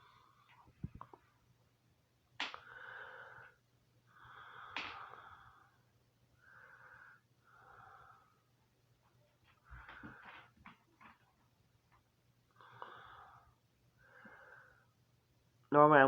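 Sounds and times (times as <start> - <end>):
person breathing wheezily: 2.6 - 5.8, 6.4 - 8.5, 12.6 - 15.0.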